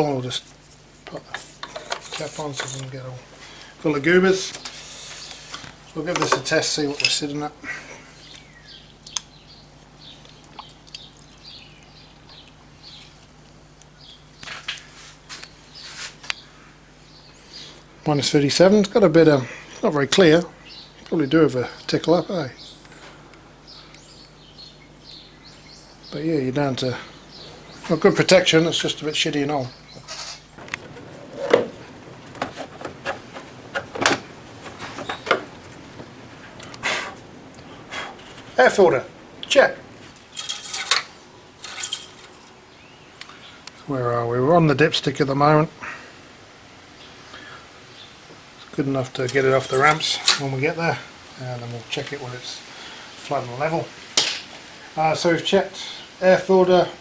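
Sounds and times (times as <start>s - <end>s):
faint birdsong: 0.0s - 57.0s
steady low hum: 0.0s - 57.0s
parts clicking and rubbing: 0.7s - 3.0s, 30.0s - 35.8s, 40.1s - 42.6s, 49.1s - 50.5s
tool clicks and rustles: 40.2s - 42.6s, 49.2s - 50.5s.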